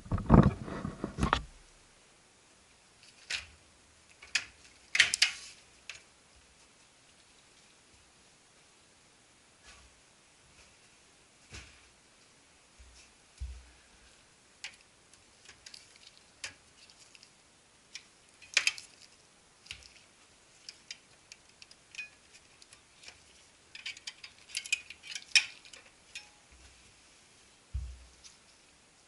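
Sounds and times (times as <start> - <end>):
plastic and metal parts clicking: 20.6 - 26.3.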